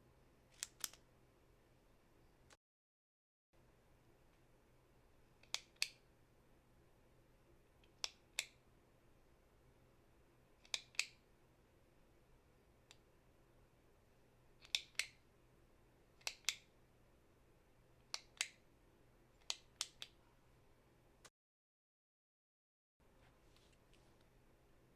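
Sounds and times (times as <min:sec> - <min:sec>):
click pen clicking: 0:00.5 - 0:01.0, 0:05.4 - 0:06.0, 0:10.6 - 0:11.2, 0:14.6 - 0:15.2, 0:16.2 - 0:16.7, 0:18.0 - 0:18.6, 0:19.4 - 0:20.2.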